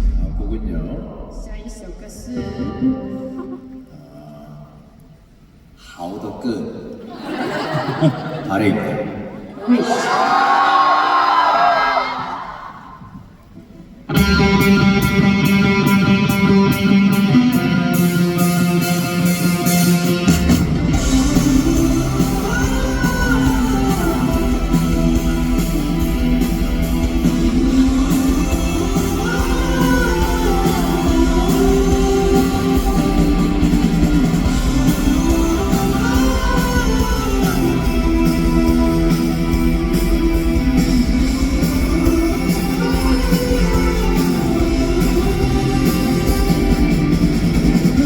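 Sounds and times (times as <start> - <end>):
live rock band playing: 14.1 - 48.0.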